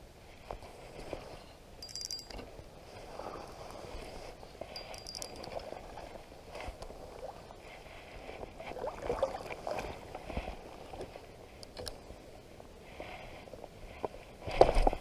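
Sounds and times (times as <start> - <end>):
river water lapping against shore: 2.8 - 12.0.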